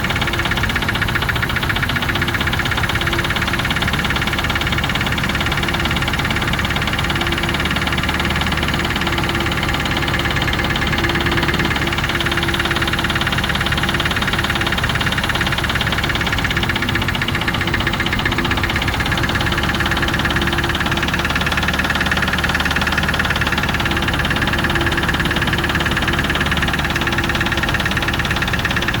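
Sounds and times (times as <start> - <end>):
engine running with rapid knock: 0.0 - 29.0.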